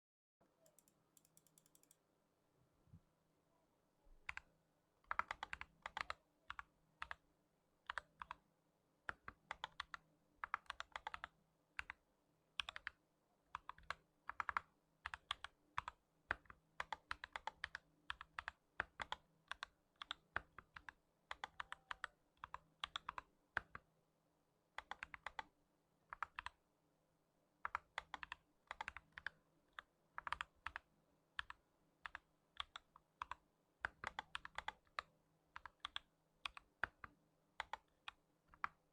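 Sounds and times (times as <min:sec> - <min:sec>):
mechanical keyboard typing: 0:00.6 - 0:02.0, 0:05.1 - 0:07.2, 0:09.1 - 0:12.0, 0:12.6 - 0:12.9, 0:13.6 - 0:23.8, 0:24.8 - 0:25.5, 0:26.1 - 0:26.5, 0:27.7 - 0:30.8, 0:31.4 - 0:38.8.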